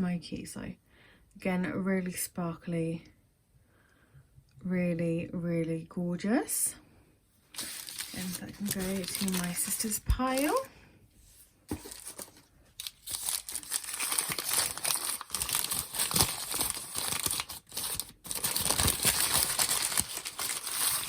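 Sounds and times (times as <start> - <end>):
packaging crinkling and tearing: 7.6 - 10.7, 11.7 - 21.0.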